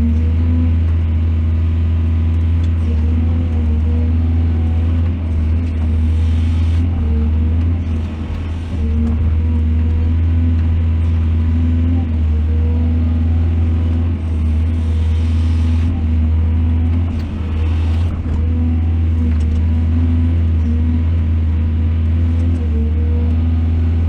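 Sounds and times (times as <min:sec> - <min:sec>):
excavator diesel engine droning: 0:00.0 - 0:24.0.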